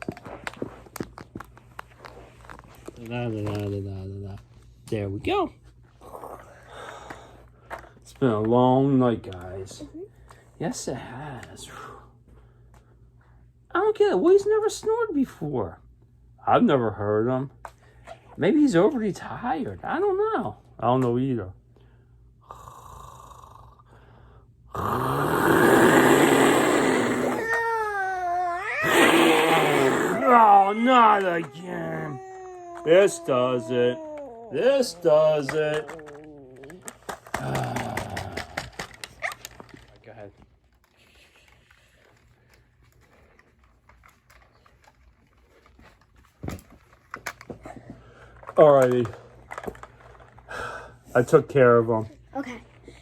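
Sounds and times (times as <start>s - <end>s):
toys being moved about: 0.0s - 4.8s, 25.6s - 50.5s.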